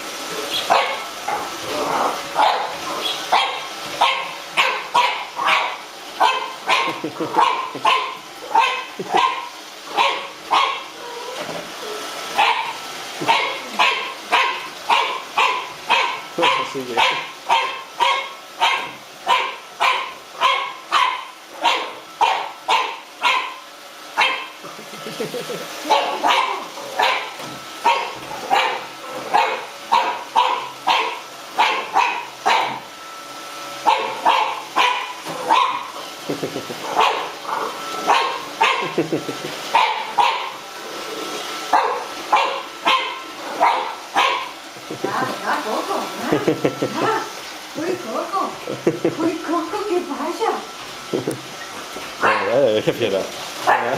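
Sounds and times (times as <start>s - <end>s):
puppy barking: 0.5s - 1.6s, 2.4s - 11.4s, 12.3s - 23.6s, 24.2s - 24.6s, 25.8s - 32.9s, 33.8s - 36.0s, 36.9s - 39.0s, 39.7s - 40.6s, 41.7s - 44.6s, 52.2s - 52.6s, 53.6s - 53.9s.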